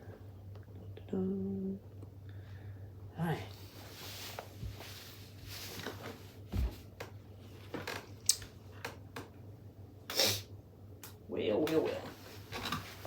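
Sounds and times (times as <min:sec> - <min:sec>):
short rustle: 0:03.6 - 0:06.9.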